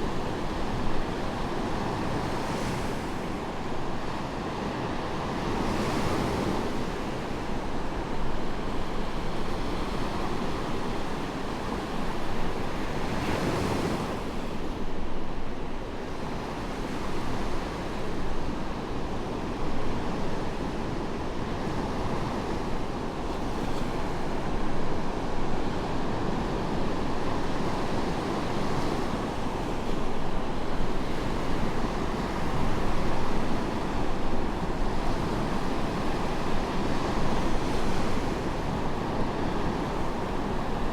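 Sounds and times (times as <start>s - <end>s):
waves breaking on sandy beach: 0.0s - 40.9s
wind: 0.0s - 40.9s.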